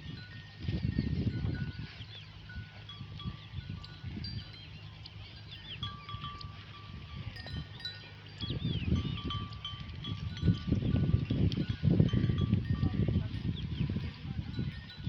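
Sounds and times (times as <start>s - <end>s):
sheep bells ringing: 0.0s - 15.0s.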